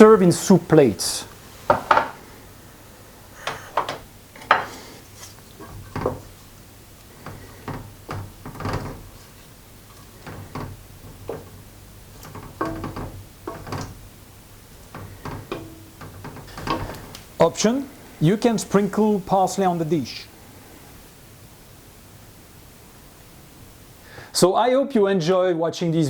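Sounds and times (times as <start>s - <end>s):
utensil knocking against pot and plates: 3.5s - 4.8s, 12.2s - 14.0s, 14.9s - 17.2s.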